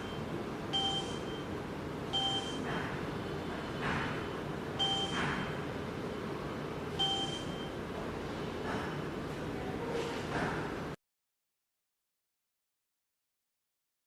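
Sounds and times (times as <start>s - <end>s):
short electronic beeps: 0.0s - 1.5s, 2.1s - 2.7s, 4.8s - 5.6s, 7.0s - 7.8s.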